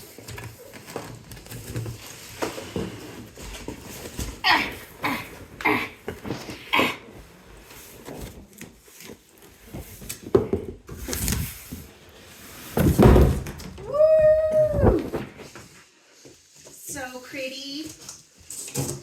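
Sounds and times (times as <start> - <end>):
cardboard scraping and rustling: 0.0 - 13.7, 14.6 - 16.8.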